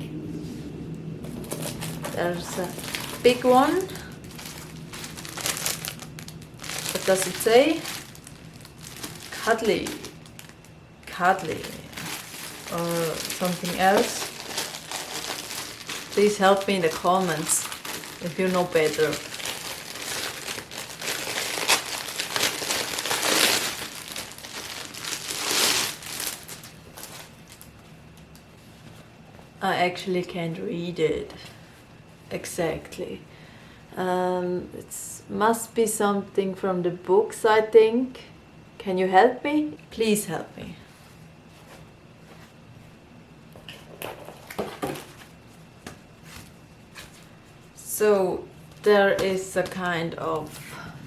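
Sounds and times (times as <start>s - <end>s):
packaging crinkling and rustling: 1.2s - 29.1s, 43.7s - 47.7s
knocks and rustles of packaging: 43.6s - 47.3s.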